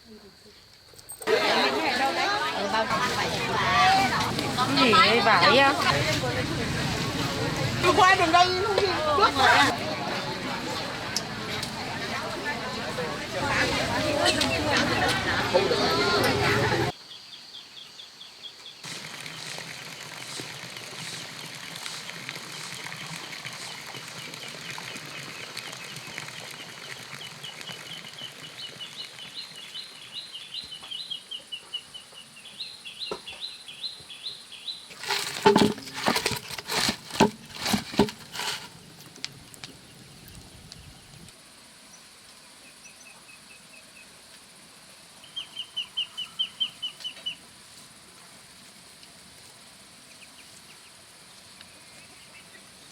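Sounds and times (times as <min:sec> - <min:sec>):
sharp rustling knocks: 0:34.9 - 0:39.8.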